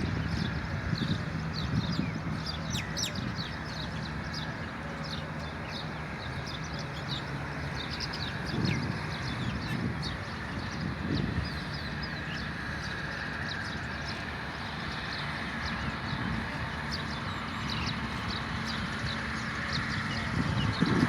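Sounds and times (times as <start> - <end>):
steady low rumble: 0.0 - 4.5
small birds chirping: 0.0 - 21.0.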